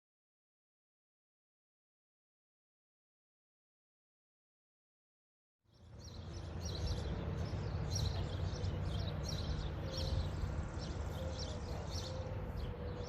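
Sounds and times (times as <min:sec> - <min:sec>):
low outdoor rumble: 0:05.7 - 0:13.0
small birds chirping: 0:05.7 - 0:13.0.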